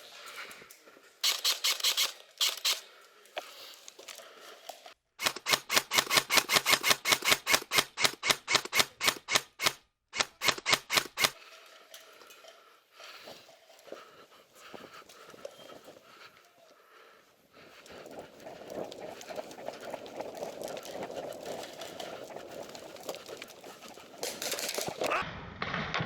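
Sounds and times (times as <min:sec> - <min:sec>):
airsoft gun firing: 0:05.2 - 0:11.4.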